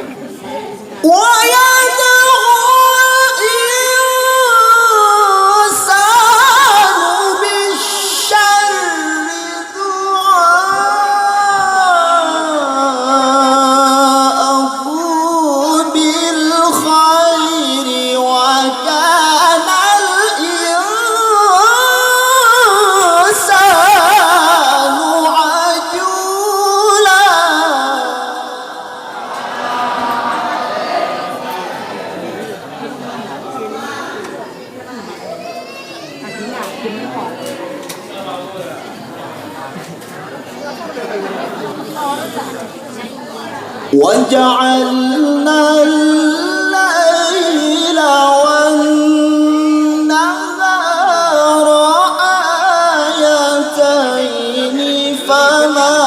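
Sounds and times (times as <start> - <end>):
man reciting melodically: 1.0 - 30.7, 43.8 - 56.0.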